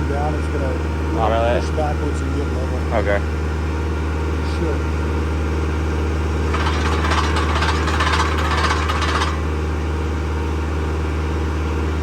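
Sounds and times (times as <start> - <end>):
tractor engine running: 4.8 - 12.0
auger grinding into ground: 6.5 - 9.7.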